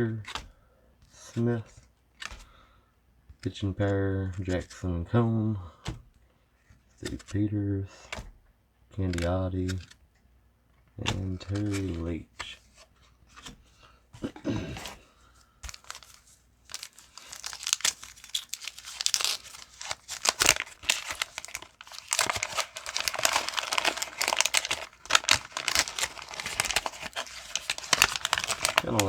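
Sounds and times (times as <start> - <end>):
wax paper wrapper tearing: 15.7 - 29.0.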